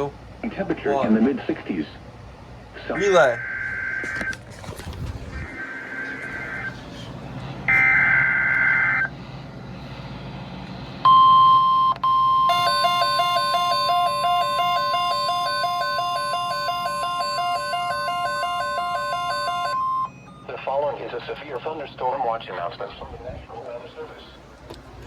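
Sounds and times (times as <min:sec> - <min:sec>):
two-pitch alarm tone: 0:07.6 - 0:09.1, 0:11.0 - 0:20.6
steady high alert tone: 0:11.1 - 0:20.6.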